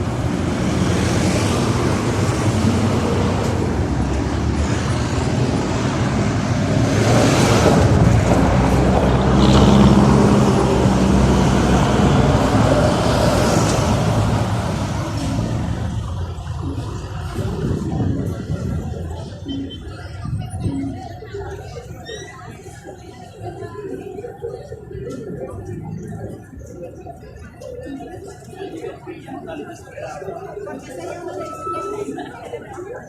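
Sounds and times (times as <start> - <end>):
vehicles passing close by: 0.0 - 32.2
city street traffic rumble: 0.0 - 33.0.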